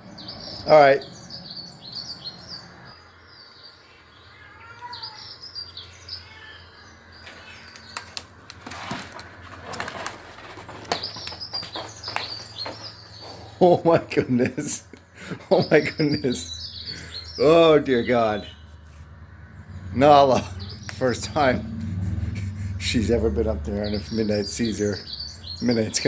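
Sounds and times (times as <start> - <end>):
songbirds chirping through tv speakers: 0.0 - 26.0
sharp knocks and scuffing: 8.6 - 13.4.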